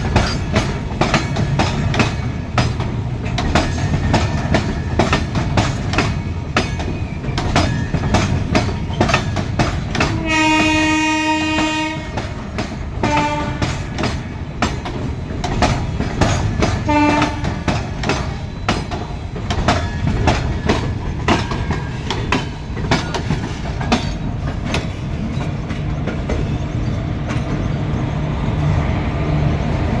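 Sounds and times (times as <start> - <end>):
train wheels clattering over rail joints: 0.0 - 28.0
locomotive horn: 10.0 - 12.4, 13.0 - 13.9, 16.9 - 17.7.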